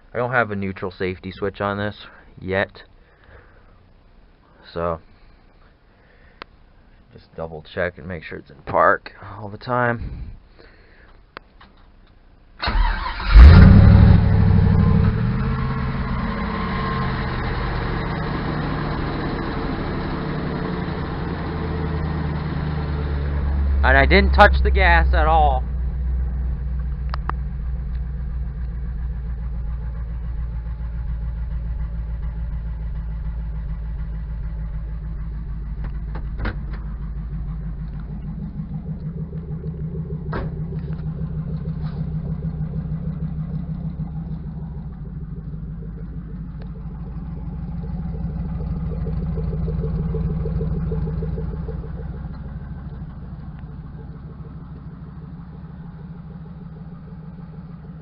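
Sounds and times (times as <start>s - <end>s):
truck engine idling: 12.6s - 58.0s.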